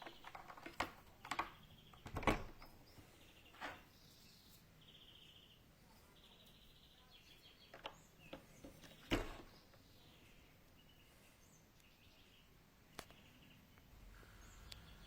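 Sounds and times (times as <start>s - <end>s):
faint bird chirps and trills: 0.0s - 15.0s.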